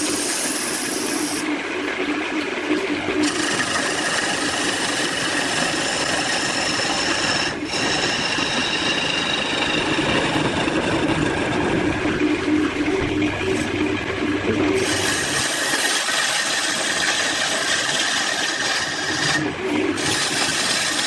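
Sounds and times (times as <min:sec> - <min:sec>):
power tool cutting wood: 0:03.2 - 0:12.1, 0:14.8 - 0:21.0.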